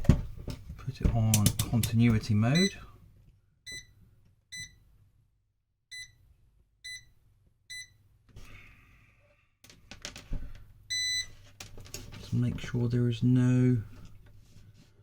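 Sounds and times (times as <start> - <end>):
multimeter beeps: 2.5 - 2.8, 3.7 - 4.8, 5.9 - 6.2, 6.9 - 7.1, 7.7 - 8.0, 10.9 - 11.3.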